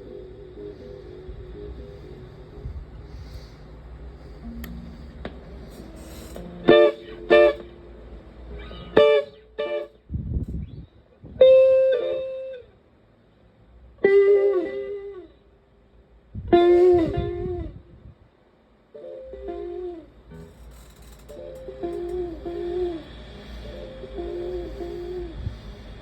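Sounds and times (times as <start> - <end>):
electric guitar chords with echo: 4.2 - 9.9, 21.4 - 25.7.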